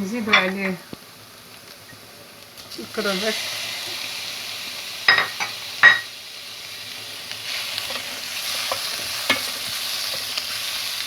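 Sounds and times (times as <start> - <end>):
seafood sizzling in a frying pan: 0.0 - 11.0.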